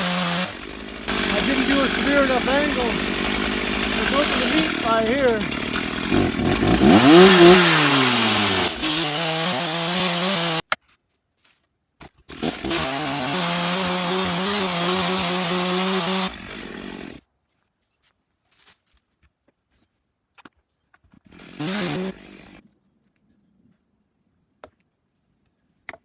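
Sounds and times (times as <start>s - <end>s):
chainsaw cutting log: 0.0s - 10.7s, 12.1s - 17.2s, 21.2s - 22.6s.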